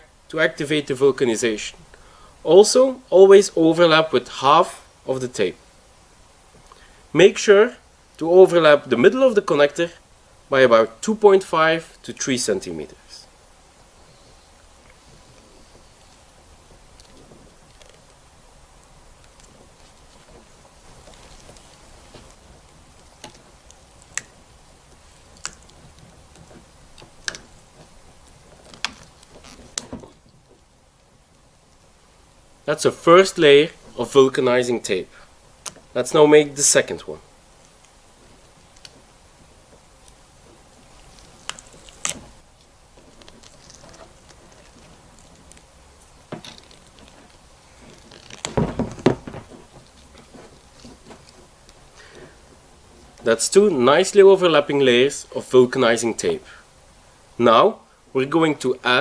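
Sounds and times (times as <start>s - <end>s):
faint handling noise: 11.9s - 36.0s, 36.6s - 54.2s
tape rustling: 13.8s - 31.9s, 37.2s - 53.3s
small ticks: 21.0s - 24.4s
sharp taps and knocks: 48.3s - 51.3s.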